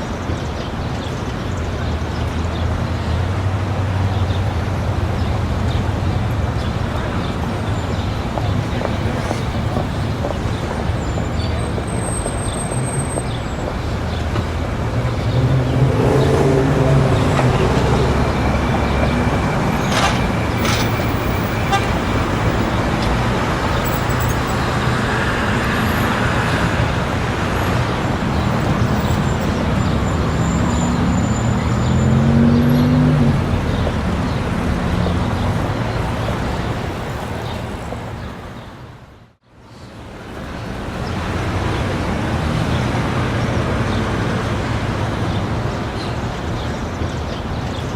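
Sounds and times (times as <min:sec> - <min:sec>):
road traffic: 0:00.0 - 0:47.9
vehicles passing: 0:00.0 - 0:47.9
engine revving: 0:14.9 - 0:21.5, 0:29.6 - 0:35.3
car horn: 0:16.9 - 0:22.6.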